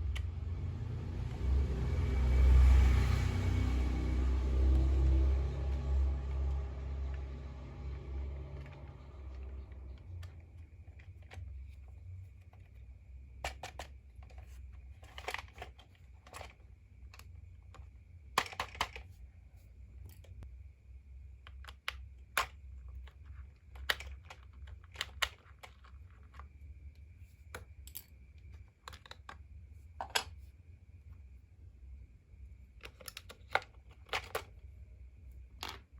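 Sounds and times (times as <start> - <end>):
plastic toy parts clicking: 8.6 - 11.6, 13.4 - 19.1, 21.4 - 26.5, 28.8 - 29.4, 32.8 - 34.6.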